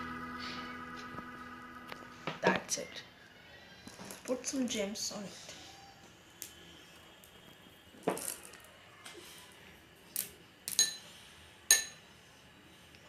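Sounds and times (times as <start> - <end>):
candies clinking on a dish: 8.0 - 8.7, 10.2 - 11.1, 11.7 - 12.0.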